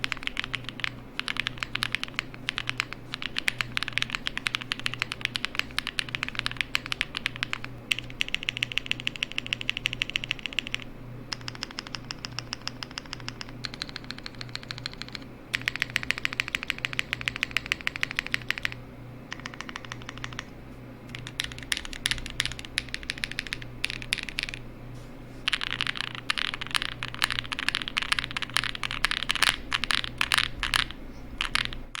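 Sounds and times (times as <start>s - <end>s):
keyboard keys clicking: 0.0s - 24.6s, 25.5s - 32.0s.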